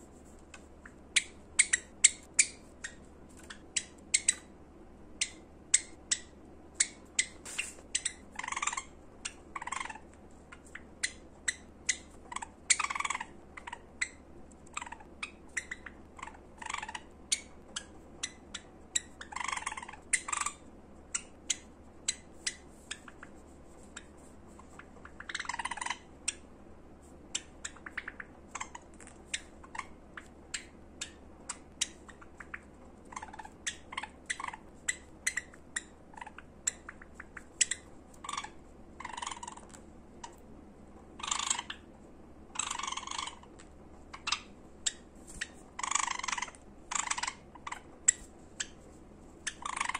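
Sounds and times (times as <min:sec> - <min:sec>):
sparrows chip notes: 0:44.1 - 0:49.9.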